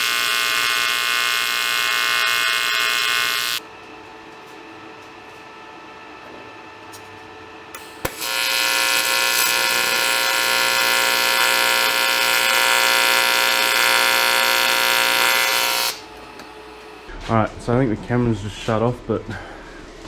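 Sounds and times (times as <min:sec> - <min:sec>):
power tool running: 0:00.0 - 0:03.7, 0:07.8 - 0:17.1.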